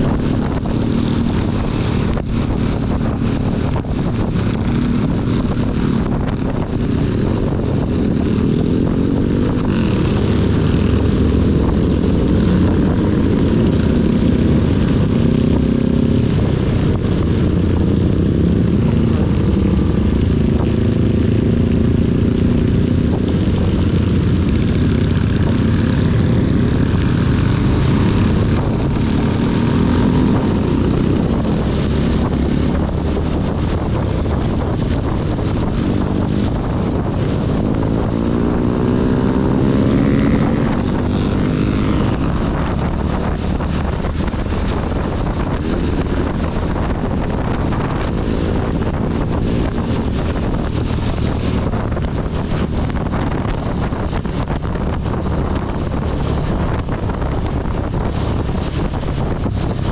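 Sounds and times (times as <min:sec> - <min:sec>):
motorcycle engine running: 0:00.0 - 0:59.9
wind: 0:00.0 - 0:59.9.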